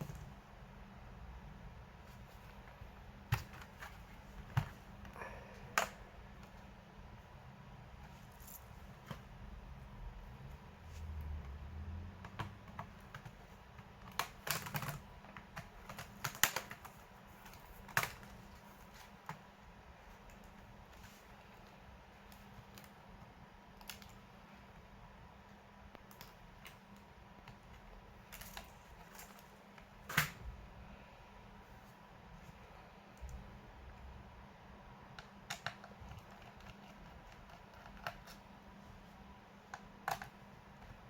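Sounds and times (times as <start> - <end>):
clicks and taps on laptop plastic: 12.2 - 18.4.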